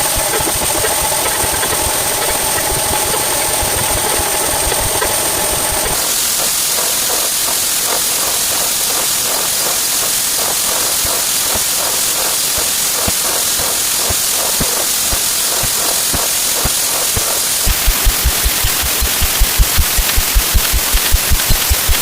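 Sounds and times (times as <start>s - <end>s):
steam hiss with rapid chuffs: 0.0s - 22.0s
humming engine-like sound: 17.7s - 22.0s.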